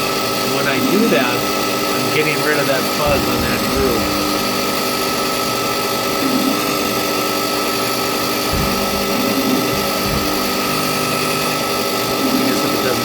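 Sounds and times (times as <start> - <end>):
brief low thumps: 2.8 - 6.8, 8.4 - 11.6.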